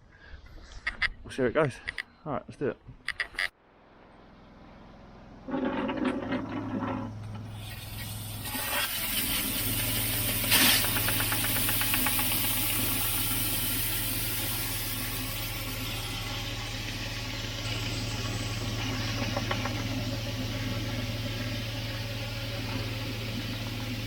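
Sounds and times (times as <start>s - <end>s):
pressure washer engine running: 5.4s - 24.0s
water jet hissing: 7.4s - 24.0s.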